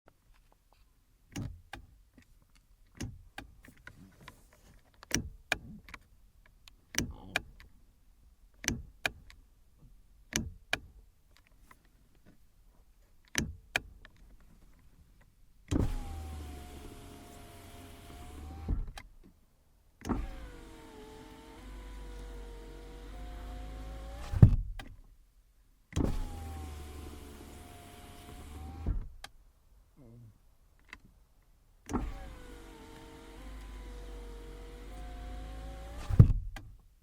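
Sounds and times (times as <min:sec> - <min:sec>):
power window motor whine: 0:15.7 - 0:18.9, 0:20.1 - 0:24.6, 0:26.0 - 0:29.1, 0:31.9 - 0:36.5.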